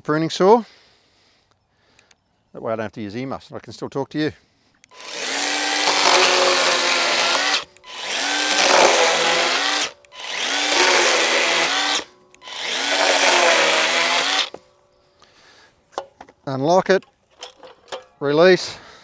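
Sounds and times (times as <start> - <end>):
cordless chainsaw cutting log: 4.9 - 14.7.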